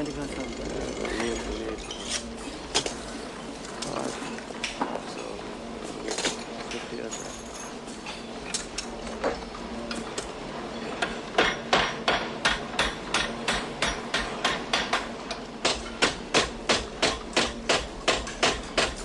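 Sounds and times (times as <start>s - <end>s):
hammer striking metal: 11.0s - 19.0s.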